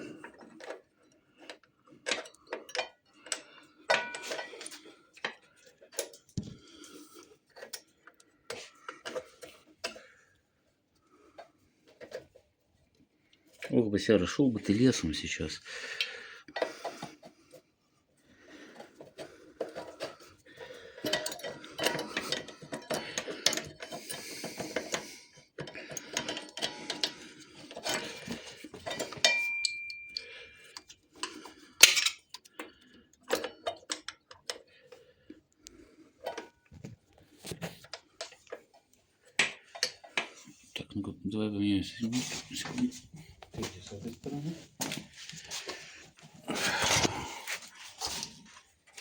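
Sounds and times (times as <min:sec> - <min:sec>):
metal clinking and scraping: 0:01.5 - 0:06.3, 0:18.6 - 0:34.6.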